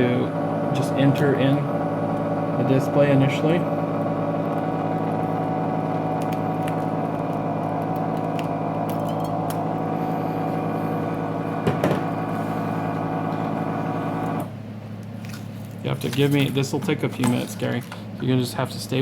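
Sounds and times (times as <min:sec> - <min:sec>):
machine electric hum: 0:00.0 - 0:19.0
brief knock: 0:11.6 - 0:12.1.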